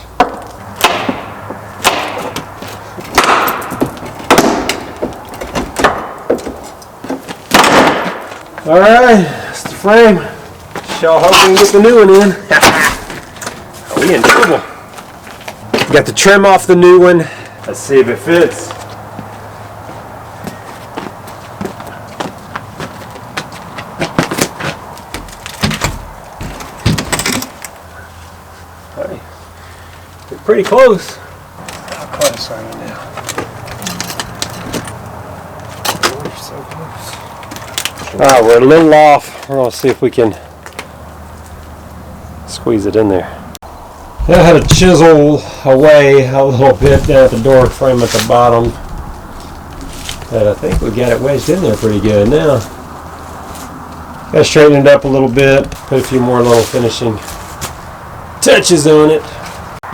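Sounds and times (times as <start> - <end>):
wood banging and cracking: 0.2 - 8.7, 21.7 - 27.8, 44.2 - 45.3, 46.6 - 53.1
door frame scraping: 46.5 - 54.3.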